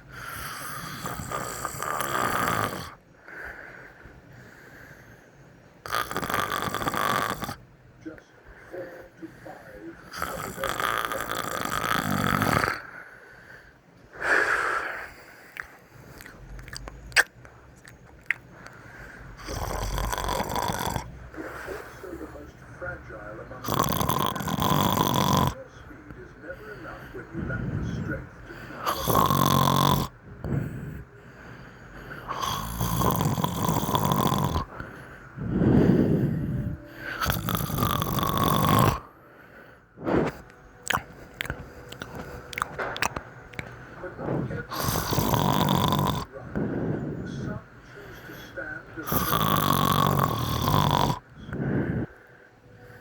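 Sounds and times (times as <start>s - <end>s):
person snoring loudly: 0.1s - 3.0s, 5.8s - 7.6s, 10.1s - 13.0s, 14.2s - 17.3s, 19.3s - 22.0s, 23.6s - 25.6s, 28.7s - 31.1s, 32.3s - 39.2s, 40.0s - 52.2s.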